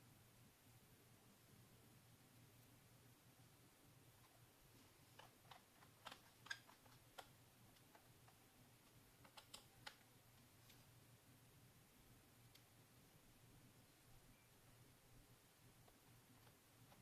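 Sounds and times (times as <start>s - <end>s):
faint keyboard typing: 4.2s - 11.0s, 15.6s - 17.0s.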